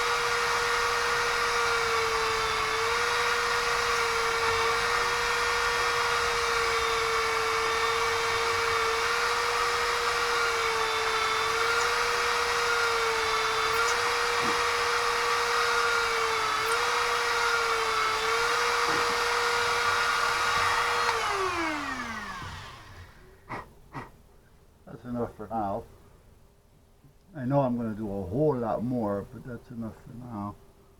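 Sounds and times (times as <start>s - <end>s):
small electric drill whining: 0.0s - 23.2s.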